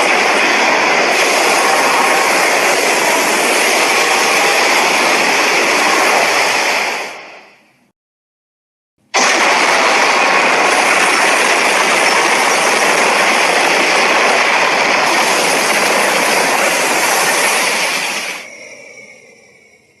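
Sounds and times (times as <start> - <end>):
loud rushing blast of noise: 0.0 - 7.7, 9.0 - 19.4
faint falling whine: 9.2 - 20.0.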